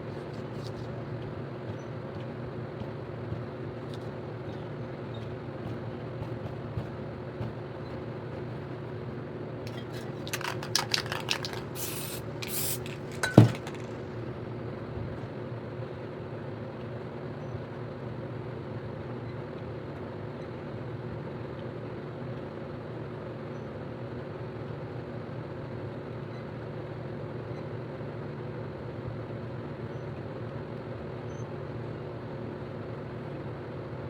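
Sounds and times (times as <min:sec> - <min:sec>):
spray can clicks: 0:09.7 - 0:14.0
spray paint spraying: 0:09.7 - 0:14.0.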